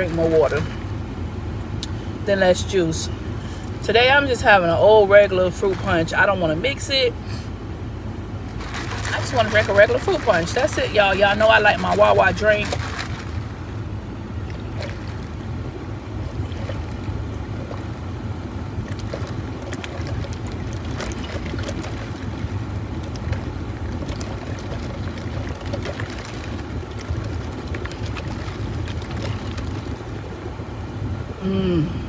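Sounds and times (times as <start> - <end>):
steady low rumble: 0.0 - 32.0
sipping and gulping: 1.6 - 2.2, 3.1 - 3.9, 14.4 - 18.0.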